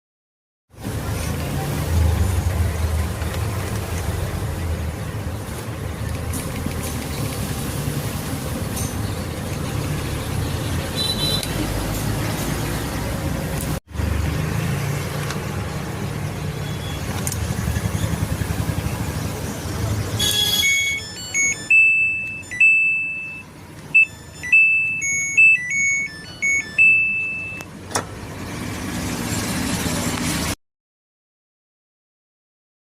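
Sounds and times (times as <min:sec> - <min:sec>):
washing machine beeping tune: 0:16.6 - 0:17.1, 0:20.2 - 0:27.7.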